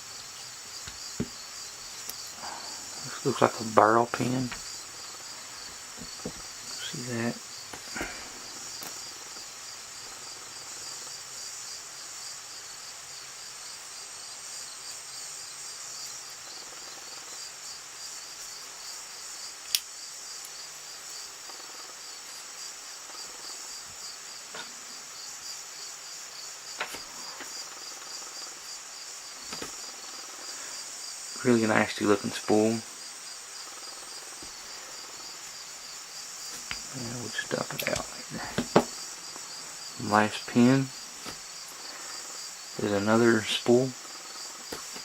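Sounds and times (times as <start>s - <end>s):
crickets chirping: 0.0s - 45.0s.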